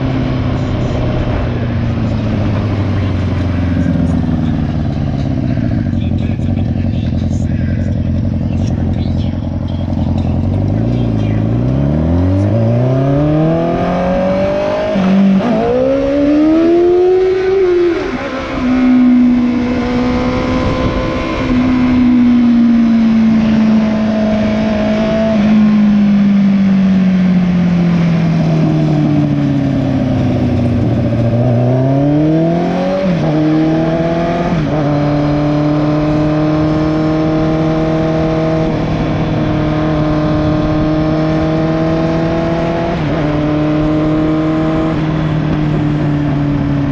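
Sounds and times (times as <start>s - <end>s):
motorcycle engine accelerating: 0.0s - 46.9s.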